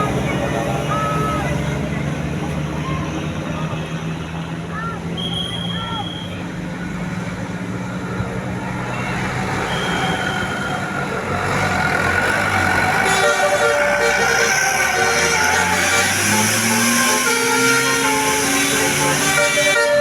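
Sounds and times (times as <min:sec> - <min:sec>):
bus engine running: 0:00.0 - 0:20.0
multi-tone horn playing notes: 0:12.8 - 0:20.0.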